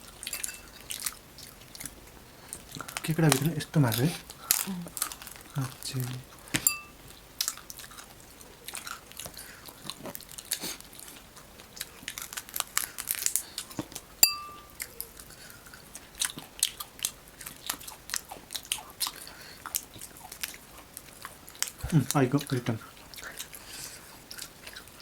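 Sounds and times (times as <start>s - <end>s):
chewing: 0.0s - 25.0s
ringing clink: 0.3s - 0.7s, 6.6s - 7.0s, 14.2s - 14.8s
crab shell crunching: 7.4s - 14.0s.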